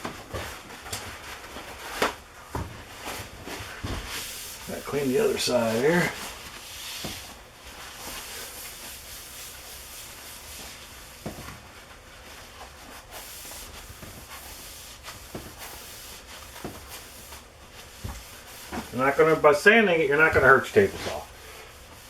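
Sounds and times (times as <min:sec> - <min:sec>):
hand scrubbing metal surface: 0:03.6 - 0:10.9, 0:12.9 - 0:22.0.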